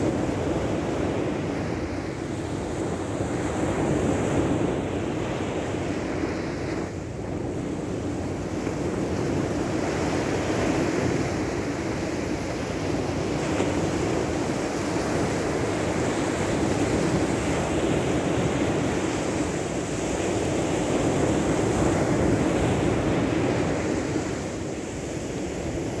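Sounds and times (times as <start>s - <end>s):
wind: 0.0s - 26.0s.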